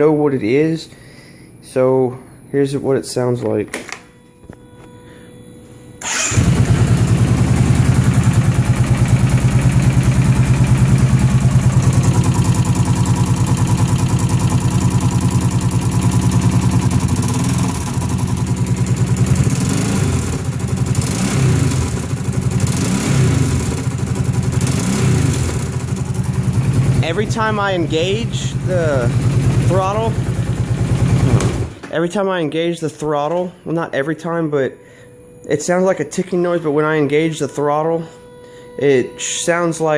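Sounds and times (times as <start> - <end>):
engine starting and running: 6.0 - 31.9.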